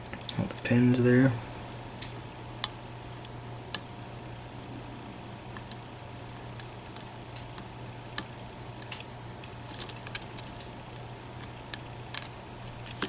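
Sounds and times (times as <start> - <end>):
low hum: 0.1 - 10.1.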